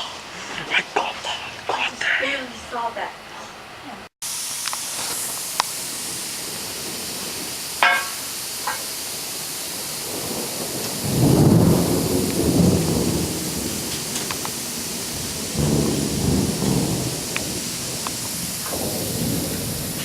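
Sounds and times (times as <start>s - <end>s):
steady hiss: 0.0s - 20.0s
rolling thunder rumble: 5.8s - 20.0s.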